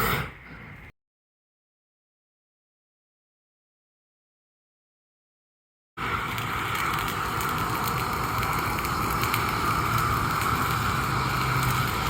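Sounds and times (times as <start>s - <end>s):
fire crackling: 6.0s - 12.0s.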